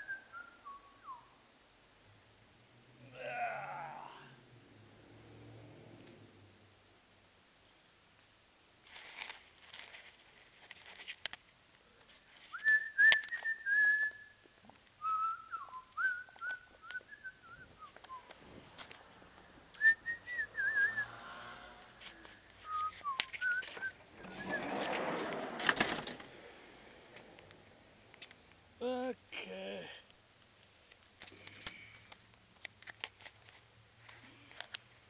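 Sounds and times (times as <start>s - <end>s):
person whistling a tune: 12.5s - 14.4s, 15.0s - 18.3s, 19.8s - 21.2s, 22.6s - 24.7s.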